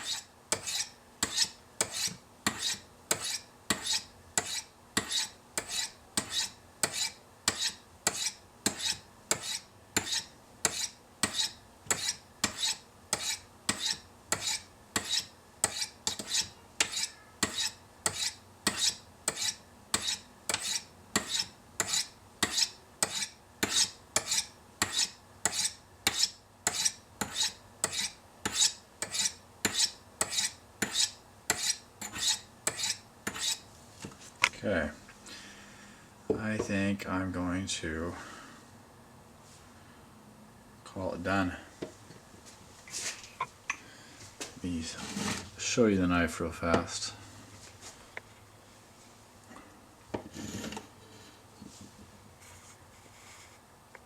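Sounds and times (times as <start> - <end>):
knife blade rasping on ceramic rods: 0.0 - 33.6.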